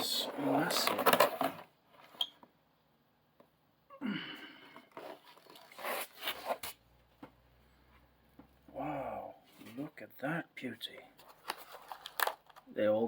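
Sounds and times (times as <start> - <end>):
person exhaling: 4.0 - 4.9.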